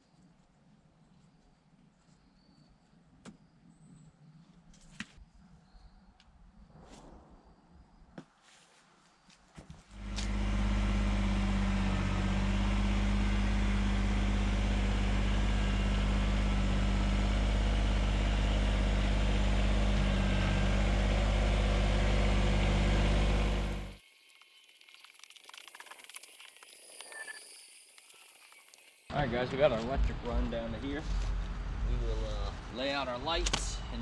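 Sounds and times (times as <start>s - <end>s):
tractor diesel engine running: 10.0s - 24.0s.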